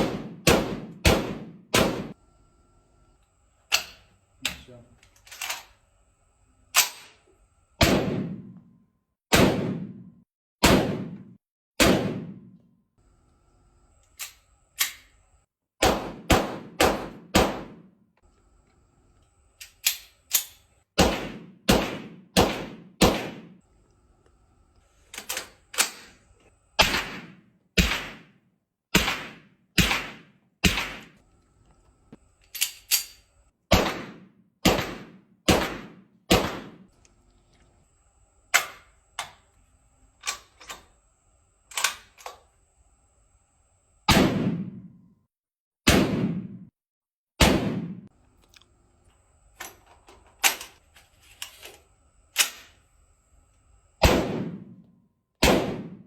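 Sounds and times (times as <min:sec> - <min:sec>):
gunshots with echoing tail: 0:00.0 - 0:02.2, 0:07.8 - 0:08.6, 0:09.3 - 0:12.5, 0:15.8 - 0:17.9, 0:21.0 - 0:23.6, 0:26.8 - 0:28.4, 0:29.0 - 0:31.2, 0:33.7 - 0:36.8, 0:44.1 - 0:44.9, 0:45.9 - 0:46.7, 0:47.4 - 0:48.1, 0:54.0 - 0:54.8, 0:55.4 - 0:56.0.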